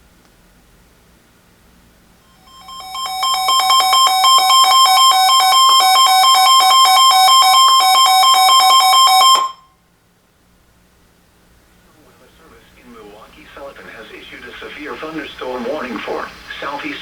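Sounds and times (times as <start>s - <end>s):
pulsing two-tone electronic beeping: 2.4s - 9.6s.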